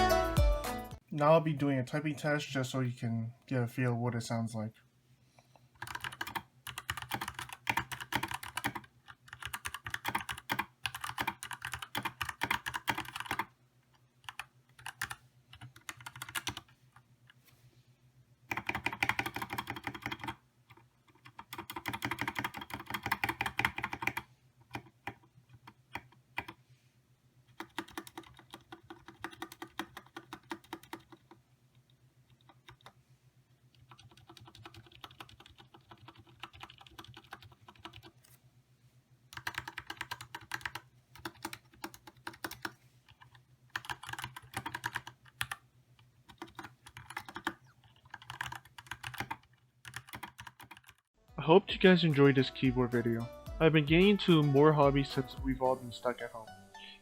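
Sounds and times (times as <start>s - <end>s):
mechanical keyboard typing: 5.8s - 13.5s, 14.2s - 16.7s, 18.5s - 26.6s, 27.5s - 31.4s, 32.3s - 33.0s, 33.7s - 38.1s, 39.3s - 45.6s, 46.2s - 51.0s.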